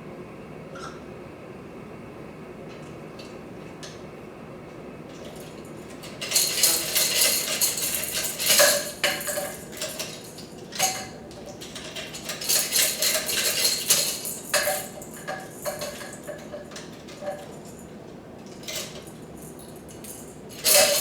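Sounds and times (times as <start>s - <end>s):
dishes and cutlery clattering: 6.1s - 17.6s, 20.6s - 21.0s.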